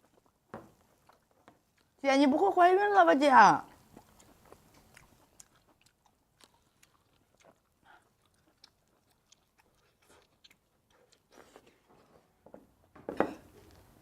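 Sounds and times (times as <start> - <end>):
faint chewing: 0.0 - 2.5, 3.6 - 12.6, 13.4 - 14.0.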